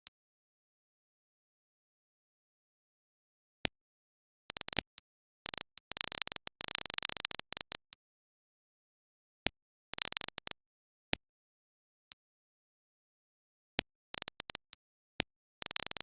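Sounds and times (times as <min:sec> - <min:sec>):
rapid sharp clicks: 0:04.5 - 0:08.0, 0:09.9 - 0:10.6, 0:14.2 - 0:14.8, 0:15.6 - 0:16.0.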